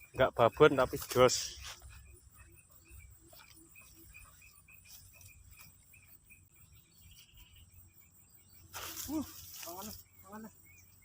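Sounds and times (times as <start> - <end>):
faint high hiss: 8.7 - 10.0.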